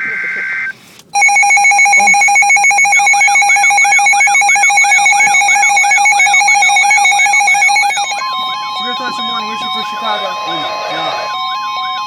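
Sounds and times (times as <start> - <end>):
steady electronic alert tone: 1.2 - 8.4.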